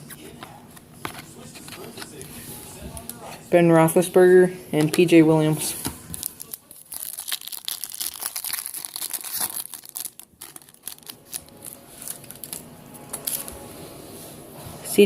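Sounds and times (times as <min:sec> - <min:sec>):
foil wrapper tearing and crinkling: 0:06.1 - 0:13.5.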